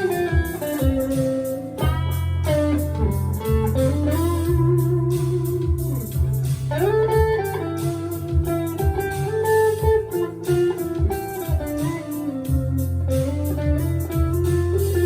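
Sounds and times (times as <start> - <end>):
electric guitar blues lead: 0.0 - 15.0
low bass notes: 0.0 - 15.0.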